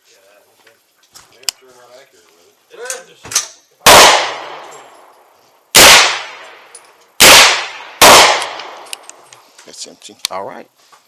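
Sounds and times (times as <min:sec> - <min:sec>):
echoing gunshots: 0:03.8 - 0:04.8, 0:05.7 - 0:09.2.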